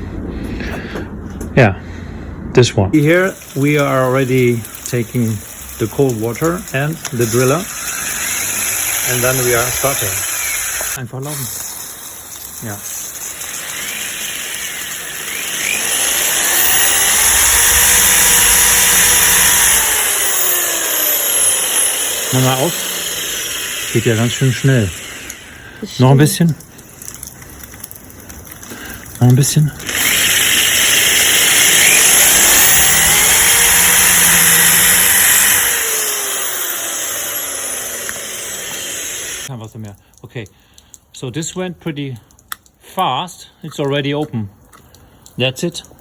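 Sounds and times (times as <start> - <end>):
electric drill drilling metal: 3.0 - 11.4, 13.1 - 25.6, 29.8 - 39.5.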